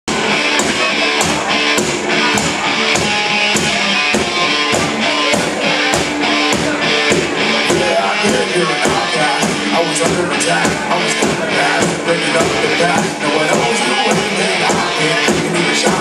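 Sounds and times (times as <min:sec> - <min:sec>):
drum kit steady beat: 0:00.1 - 0:16.0
strummed electric guitar: 0:00.1 - 0:16.0.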